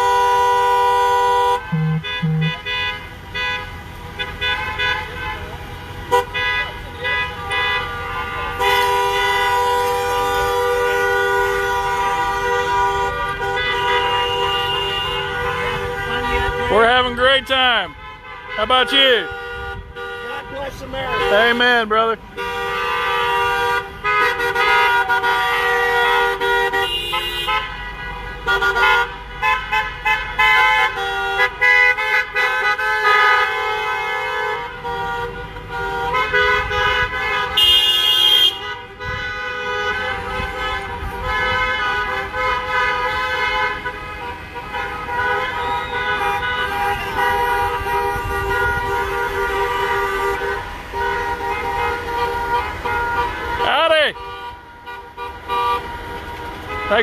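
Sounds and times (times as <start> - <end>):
car horns honking: 0.0 - 57.0
higher-pitched horn: 1.2 - 3.0.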